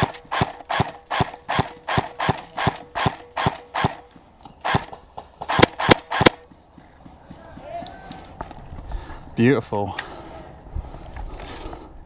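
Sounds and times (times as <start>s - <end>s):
running footsteps on ground: 6.4s - 9.1s.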